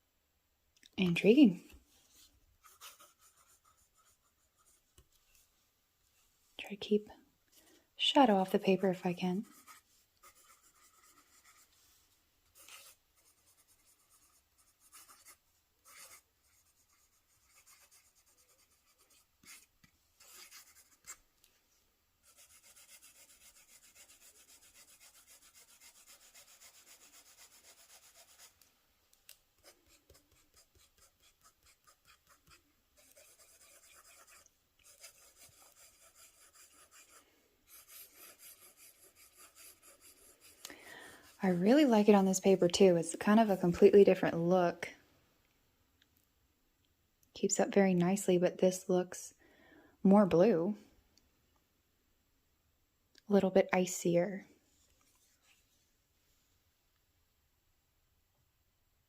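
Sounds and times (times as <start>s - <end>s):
pen scratching on paper: 2.6s - 4.8s, 9.4s - 11.7s, 12.6s - 21.2s, 22.2s - 28.5s, 29.6s - 40.6s.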